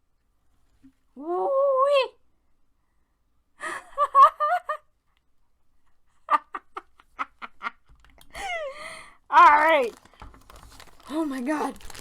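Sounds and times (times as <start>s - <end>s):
person giggling: 6.3s - 9.0s.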